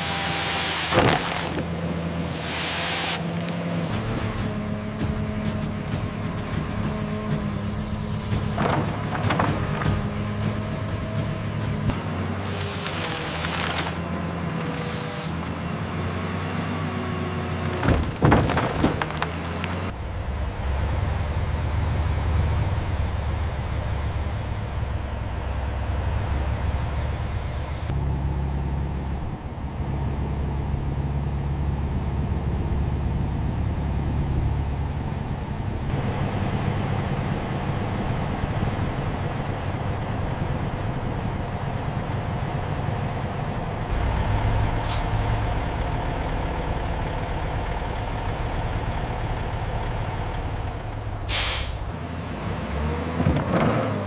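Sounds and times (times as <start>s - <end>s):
heavy machinery engine drone: 0.0s - 54.0s
air brake hiss: 44.8s - 45.2s, 51.3s - 51.9s.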